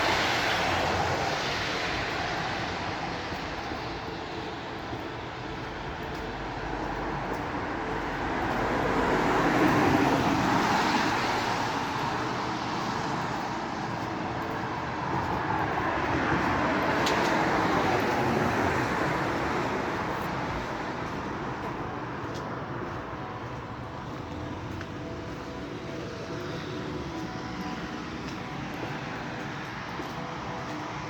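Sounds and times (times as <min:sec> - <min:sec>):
faint steady tones: 0:20.1 - 0:31.0.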